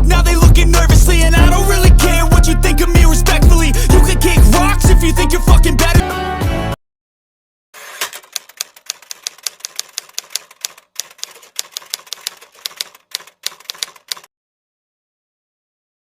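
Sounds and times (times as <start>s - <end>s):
typewriter keys clacking: 7.8s - 14.3s.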